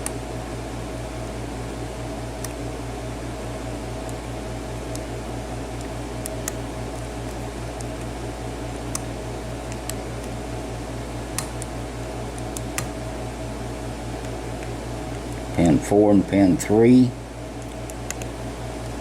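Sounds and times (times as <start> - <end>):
low pulsing background hum: 0.0 - 19.0.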